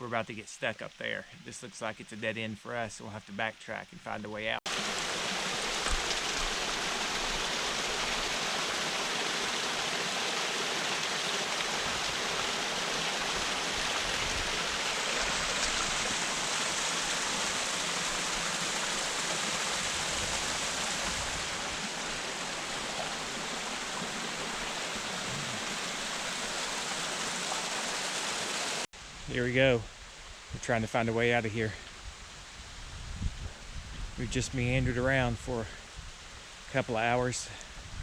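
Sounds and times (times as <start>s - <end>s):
running water rushing: 0.1s - 28.9s.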